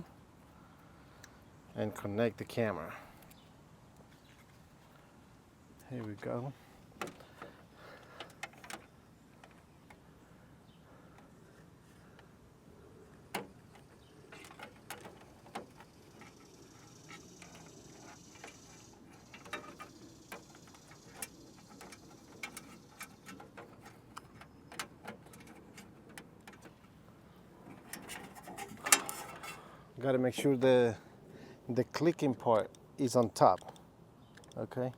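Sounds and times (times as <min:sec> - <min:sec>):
plastic parts clicking: 0:13.3 - 0:16.4.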